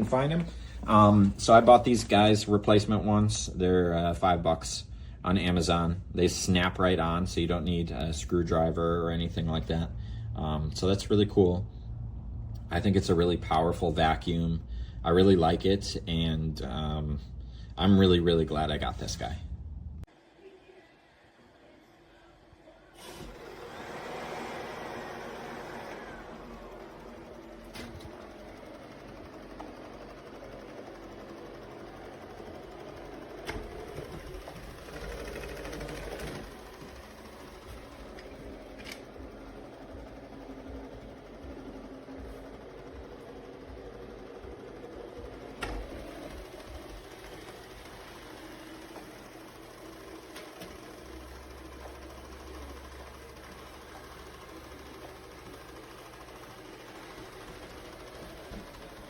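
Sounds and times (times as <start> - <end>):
robot vacuum motor hum: 21.0 - 59.0.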